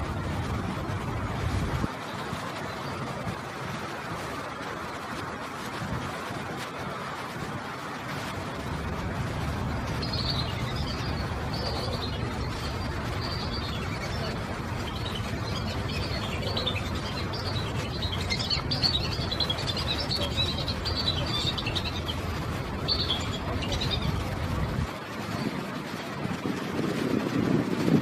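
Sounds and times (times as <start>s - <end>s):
birds chirping: 9.4s - 25.6s.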